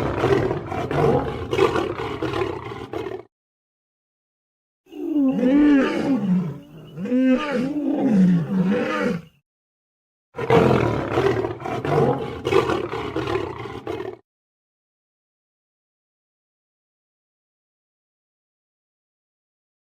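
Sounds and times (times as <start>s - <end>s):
lion roaring: 0.0s - 3.3s, 4.9s - 9.3s, 10.4s - 14.2s.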